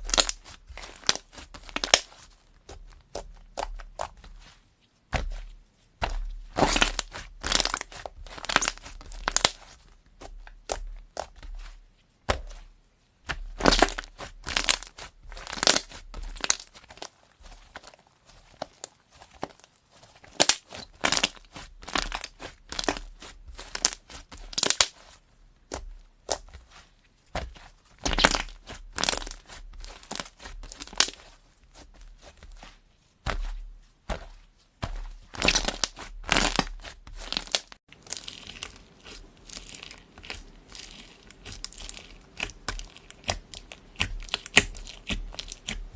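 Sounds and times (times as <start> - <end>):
slime crackling and popping: 0.0 - 2.3, 6.5 - 11.6, 13.3 - 17.9, 20.2 - 26.5, 27.4 - 32.3, 35.3 - 45.9.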